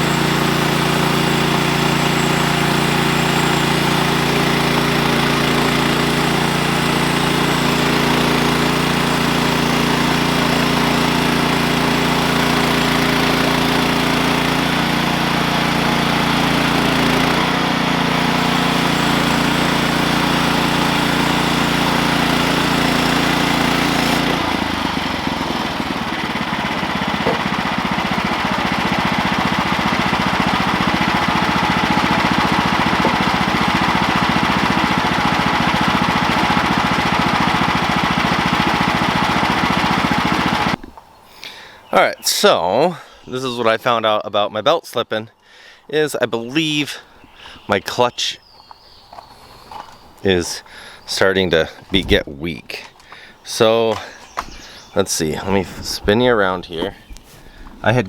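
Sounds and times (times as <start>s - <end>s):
gas engine running: 0.0s - 41.8s, 48.4s - 58.0s.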